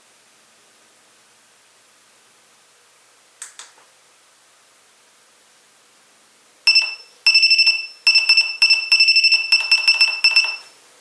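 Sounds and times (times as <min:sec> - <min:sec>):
high-pitched buzzer beeps: 0:06.7 - 0:10.7.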